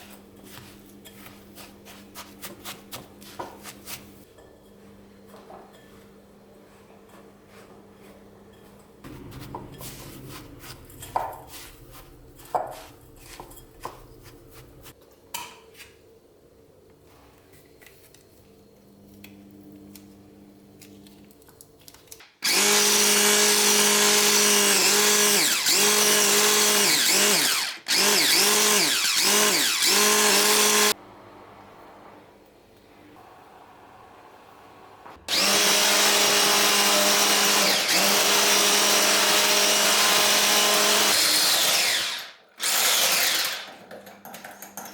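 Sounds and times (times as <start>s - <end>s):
small electric motor running: 22.4s - 31.0s, 35.3s - 43.7s.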